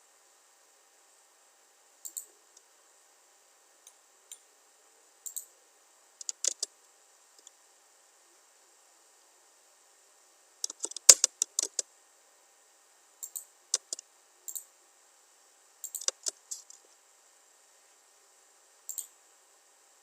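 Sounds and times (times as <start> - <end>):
faint steady hiss: 0.0 - 20.0
mouse and keyboard clicks: 2.1 - 2.3, 6.2 - 6.7, 10.6 - 11.8, 13.2 - 14.6, 15.8 - 16.8.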